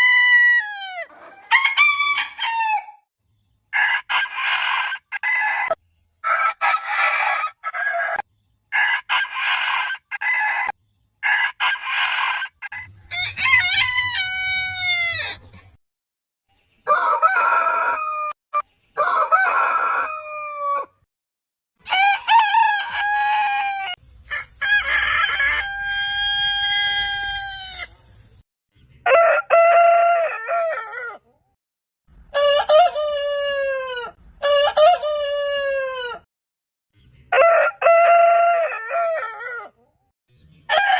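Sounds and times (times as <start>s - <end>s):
rooster crowing: 0.0s - 3.0s, 3.8s - 8.2s, 8.8s - 15.3s, 16.9s - 18.4s, 19.0s - 20.9s, 21.8s - 28.0s, 29.1s - 31.2s, 32.3s - 36.3s, 37.3s - 39.7s, 40.7s - 40.9s.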